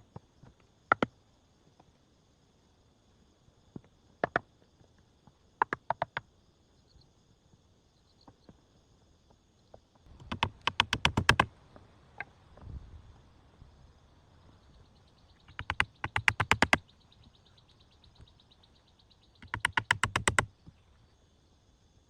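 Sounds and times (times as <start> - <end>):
sharp knocks: 10.1 - 11.5, 15.5 - 16.8, 19.4 - 20.5.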